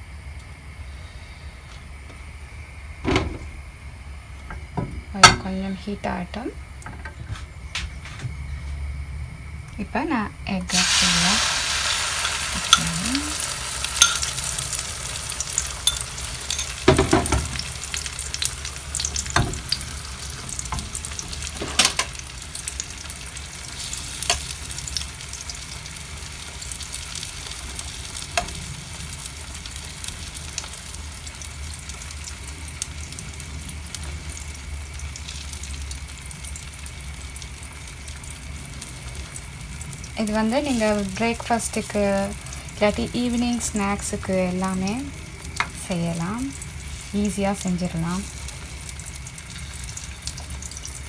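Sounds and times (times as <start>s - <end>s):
egg sizzling in oil: 10.7s - 51.0s.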